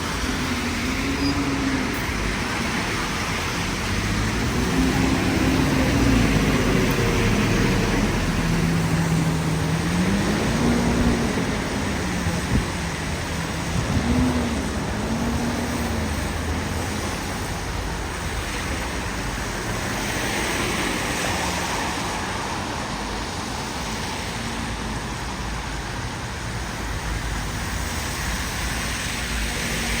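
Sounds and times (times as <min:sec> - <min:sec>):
vehicle passing: 0:00.0 - 0:17.6
bus engine: 0:00.0 - 0:30.0
road noise: 0:00.0 - 0:30.0.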